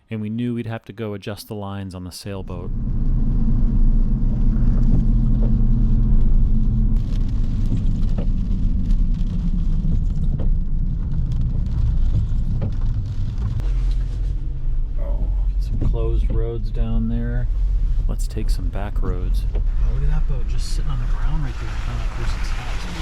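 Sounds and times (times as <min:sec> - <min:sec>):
car engine and road noise: 0:02.4 - 0:23.0.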